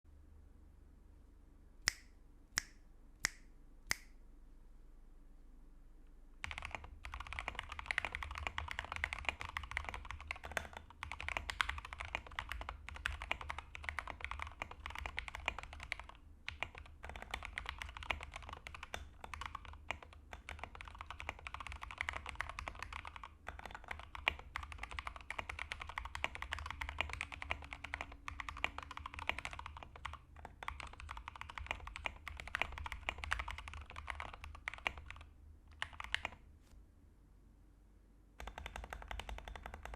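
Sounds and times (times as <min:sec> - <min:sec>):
fast mechanical keyboard typing: 0:06.4 - 0:36.4, 0:38.4 - 0:39.9.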